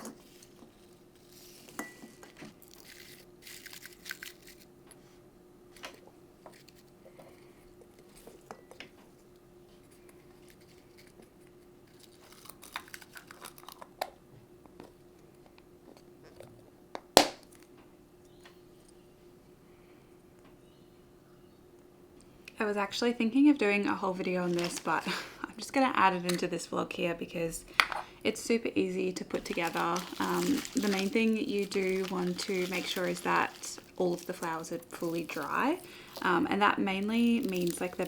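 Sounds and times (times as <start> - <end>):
dried flowers crackling and rustling: 0.0 - 4.7, 23.8 - 25.8, 28.4 - 38.0
faint steady hum: 0.0 - 38.0.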